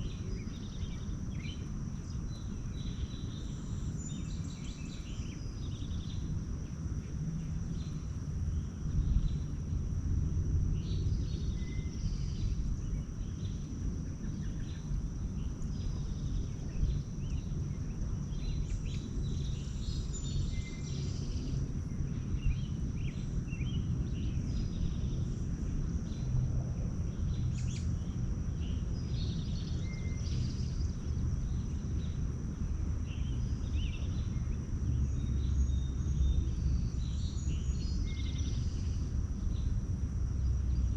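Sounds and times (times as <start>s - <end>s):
steady low rumble: 0.0s - 40.9s
songbirds chirping: 10.7s - 40.9s.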